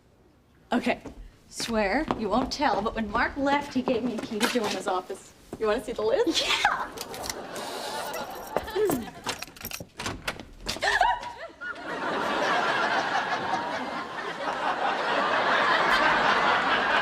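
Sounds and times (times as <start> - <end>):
studio audience laughing: 7.0 - 9.2, 11.3 - 17.0.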